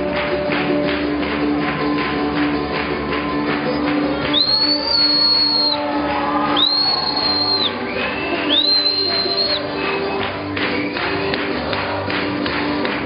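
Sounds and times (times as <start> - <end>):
band music: 0.0 - 13.0
high whistled tones: 4.3 - 5.8, 6.5 - 9.7.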